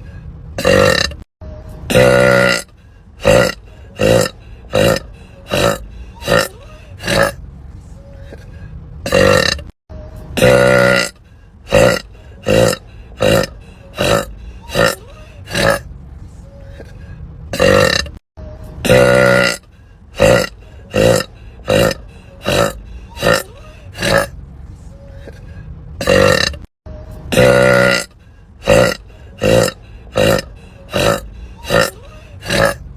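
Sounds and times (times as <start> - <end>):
woman burping: 0.6 - 1.2, 1.9 - 7.4, 9.1 - 9.7, 10.4 - 11.1, 11.7 - 15.8, 17.6 - 18.2, 18.8 - 19.6, 20.2 - 24.3, 26.0 - 26.7, 28.7 - 32.8.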